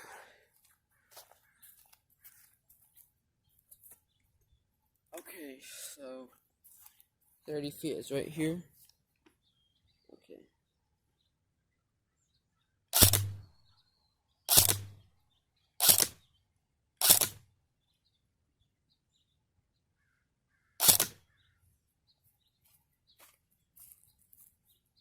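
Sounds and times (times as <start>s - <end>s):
airsoft rifle shots: 13.0s - 13.5s, 14.5s - 15.0s, 15.8s - 16.2s, 17.0s - 17.4s, 20.8s - 21.2s.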